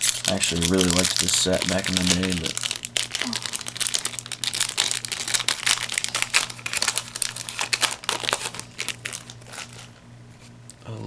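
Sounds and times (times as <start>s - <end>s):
foil wrapper crinkling: 0.0s - 10.6s.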